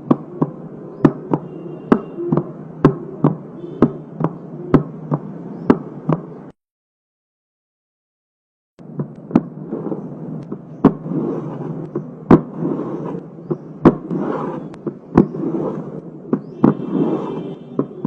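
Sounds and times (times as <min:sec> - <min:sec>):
steady rushing noise: 0:08.8 - 0:18.0.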